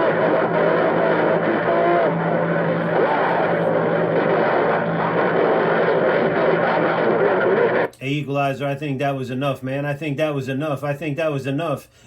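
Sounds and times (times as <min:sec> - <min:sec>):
radio static: 0:00.0 - 0:07.9
garbled radio transmissions: 0:00.0 - 0:08.0
steady hum: 0:00.0 - 0:08.0.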